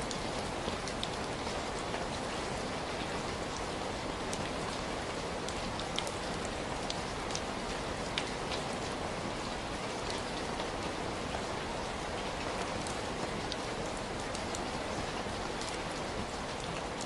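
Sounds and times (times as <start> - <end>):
heavy rain: 0.0 - 17.0
water drips on surfaces: 0.0 - 17.0.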